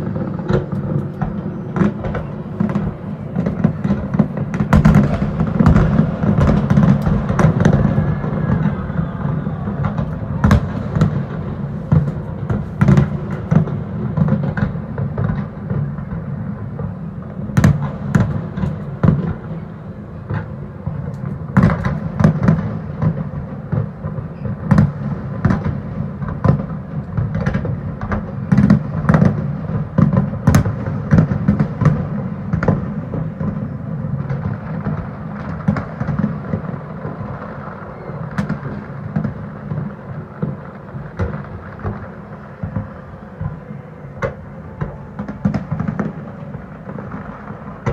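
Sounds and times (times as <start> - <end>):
low rumble of echoing reports: 0.0 - 14.2, 36.8 - 47.9
fireworks bangs: 0.0 - 47.9.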